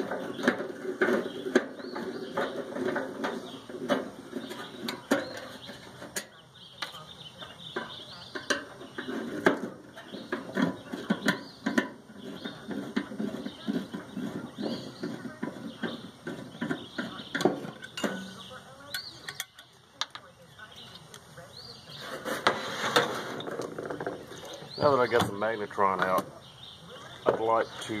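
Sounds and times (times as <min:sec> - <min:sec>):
hand tools clanking on sheet metal: 0:00.0 - 0:20.2.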